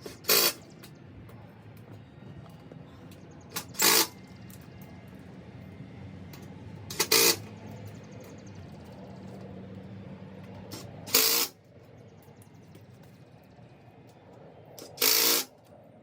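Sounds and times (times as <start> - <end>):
cordless drill driving screws: 0.0 - 0.6, 3.6 - 4.1, 6.9 - 7.4, 10.8 - 11.5, 14.8 - 15.5.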